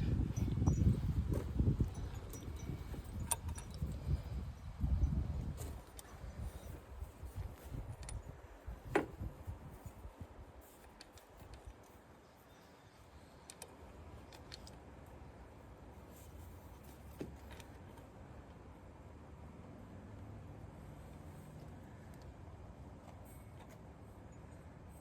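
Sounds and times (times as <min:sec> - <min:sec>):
wind buffeting microphone: 0:00.0 - 0:10.6.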